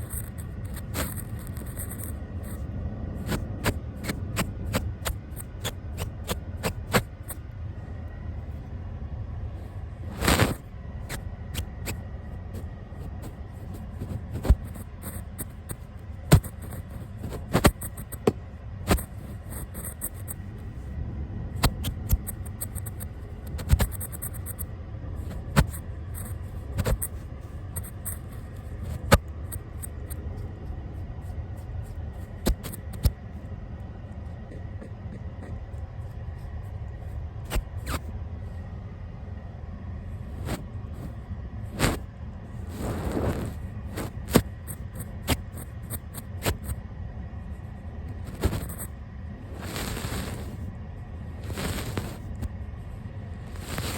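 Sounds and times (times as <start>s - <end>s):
low rumble: 0.0s - 45.6s
bristles tapping on lens: 14.0s - 20.4s, 21.6s - 24.6s, 25.3s - 30.2s, 32.3s - 33.2s.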